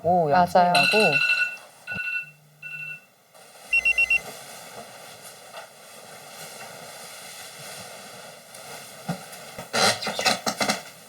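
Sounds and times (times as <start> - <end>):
steady low hiss: 0.0 - 9.8
high electronic beeps: 0.8 - 3.0, 3.7 - 4.2.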